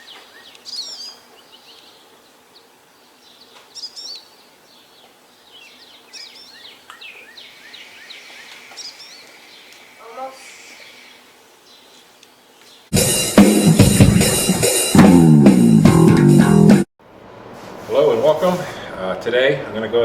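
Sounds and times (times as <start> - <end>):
faint outdoor background noise: 0.0 - 12.9, 17.0 - 20.0
songbirds chirping: 0.0 - 12.9.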